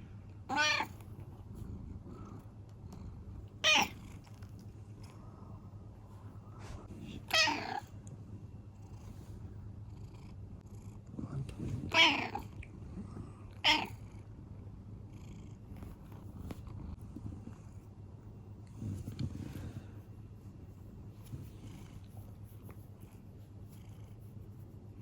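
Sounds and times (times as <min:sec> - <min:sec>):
cat high-pitched calls: 0:00.5 - 0:00.9.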